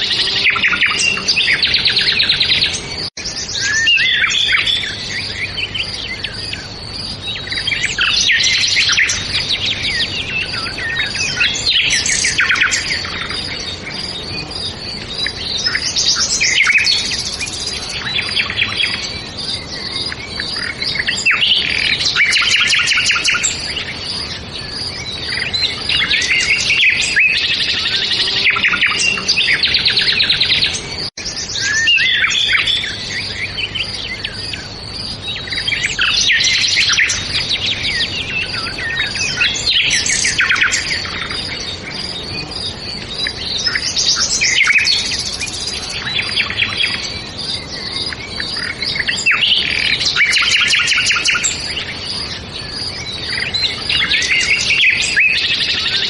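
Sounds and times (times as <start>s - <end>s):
songbirds chirping and trilling: 0.0s - 56.0s.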